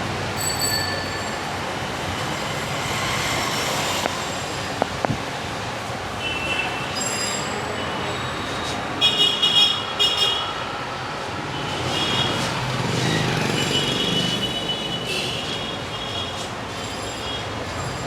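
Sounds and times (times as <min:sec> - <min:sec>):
busy street traffic: 0:00.0 - 0:18.0
vehicle horns beeping: 0:06.2 - 0:10.6, 0:11.6 - 0:12.6.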